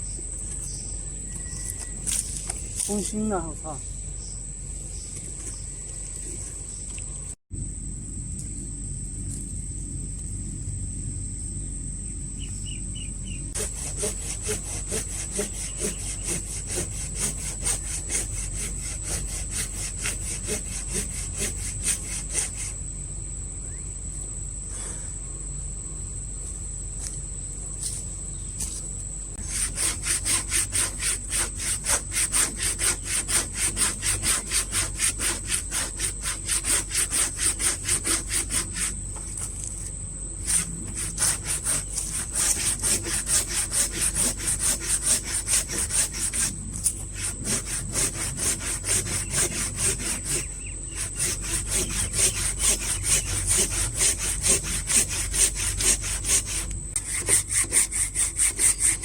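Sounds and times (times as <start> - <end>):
hand saw cutting wood: 13.6 - 22.8, 29.4 - 39.7, 40.4 - 59.0.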